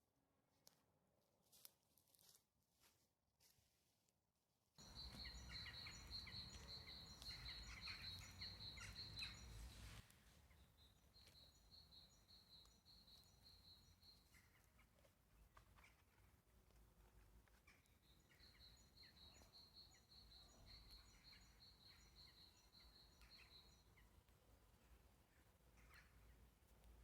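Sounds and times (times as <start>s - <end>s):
bird chirping: 4.8s - 15.0s, 17.7s - 24.2s.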